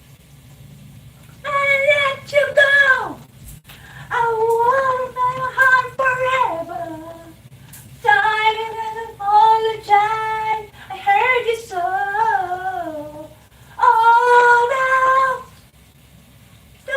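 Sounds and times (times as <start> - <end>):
high voice singing: 1.4 - 3.2, 4.1 - 7.4, 8.0 - 15.5.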